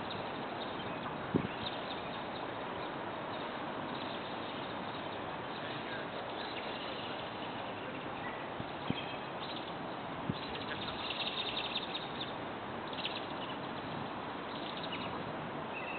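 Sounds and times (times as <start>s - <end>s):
background hiss: 0.0s - 15.9s
faint bird chirps: 3.3s - 15.9s.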